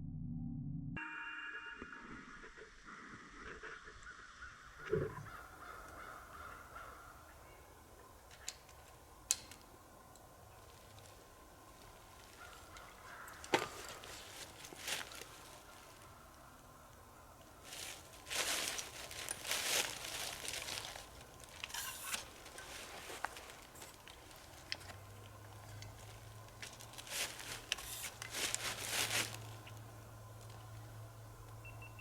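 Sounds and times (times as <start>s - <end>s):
low steady hum: 0.0s - 3.6s, 4.5s - 32.0s
footsteps crunching dry leaves: 10.5s - 16.9s, 17.5s - 31.2s.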